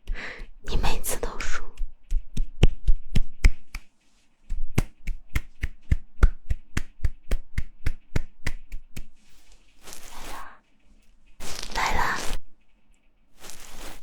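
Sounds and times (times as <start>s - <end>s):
hands clapping: 2.1s - 3.9s, 4.5s - 9.1s.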